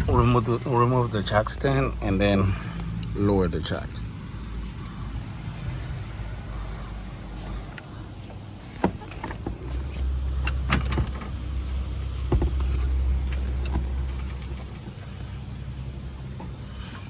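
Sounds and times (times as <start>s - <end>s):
steady low hum: 0.0s - 17.0s
metal clanks of car jack: 8.7s - 11.5s.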